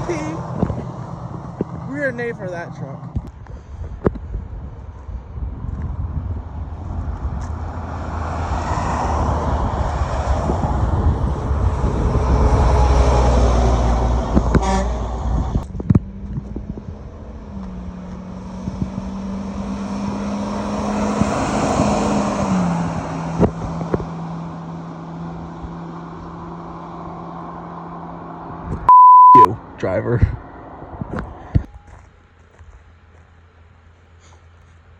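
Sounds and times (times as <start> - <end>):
vehicle passing quietly: 5.0 - 28.6
heavy vehicle passing: 6.0 - 16.2, 16.8 - 28.6.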